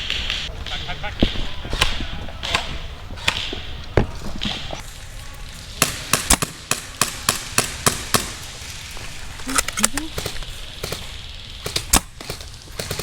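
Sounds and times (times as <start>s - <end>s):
airsoft gun shots: 5.8s - 8.4s, 9.5s - 13.0s
sharp cracks: 5.8s - 13.0s.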